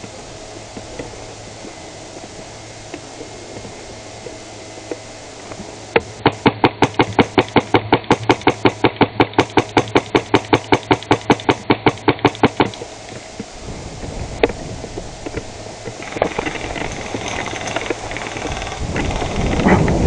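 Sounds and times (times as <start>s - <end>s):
airsoft rifle shots: 6.0s - 12.8s.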